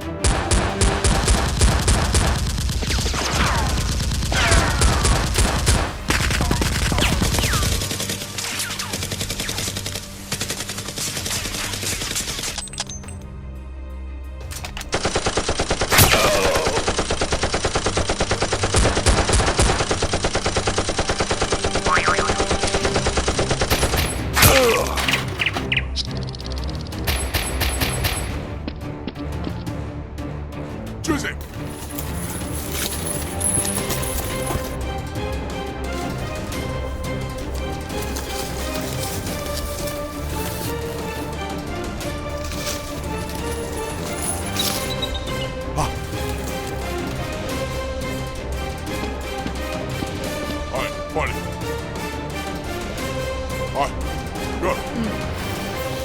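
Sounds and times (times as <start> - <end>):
background music: 0.0 - 56.0
automatic gunfire: 0.2 - 12.6, 14.9 - 21.8.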